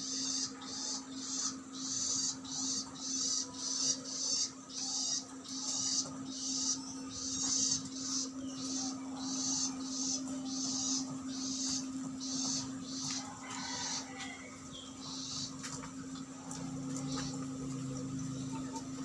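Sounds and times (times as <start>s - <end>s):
bird chattering: 0.0s - 14.1s
steady low hum: 0.0s - 19.0s.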